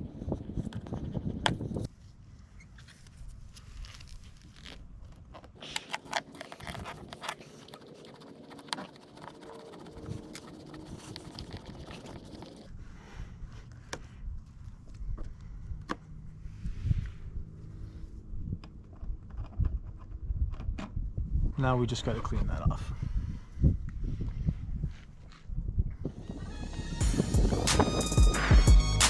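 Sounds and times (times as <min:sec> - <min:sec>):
floss scraping through foam: 0:03.6 - 0:12.7.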